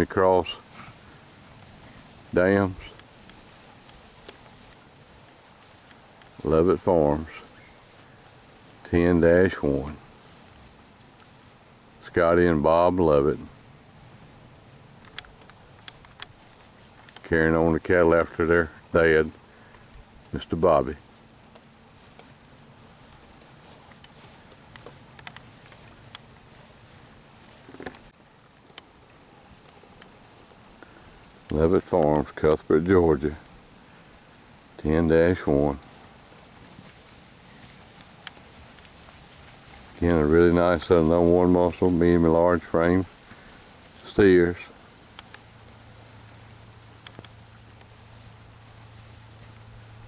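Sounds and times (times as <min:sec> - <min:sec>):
insects chirring: 0:00.0 - 0:50.0
faint clicks: 0:15.0 - 0:16.4, 0:23.8 - 0:26.3, 0:28.7 - 0:28.9, 0:42.0 - 0:46.4, 0:47.0 - 0:48.0.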